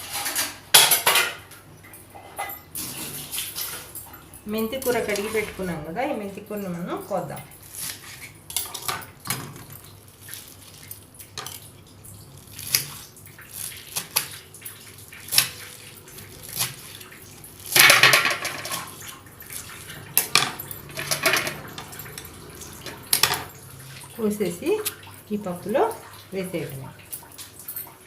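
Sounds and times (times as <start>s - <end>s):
knife chopping leaves: 15.2s - 18.8s.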